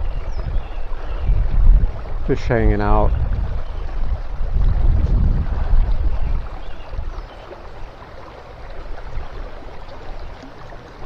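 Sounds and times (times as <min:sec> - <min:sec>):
wind buffeting microphone: 0:00.0 - 0:08.0
river rippling: 0:00.0 - 0:11.0.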